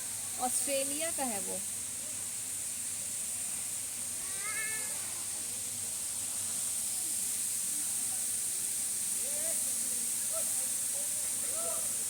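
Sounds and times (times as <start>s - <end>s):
high-pitched hiss: 0.0s - 12.0s
meow-like bird call: 4.2s - 5.0s.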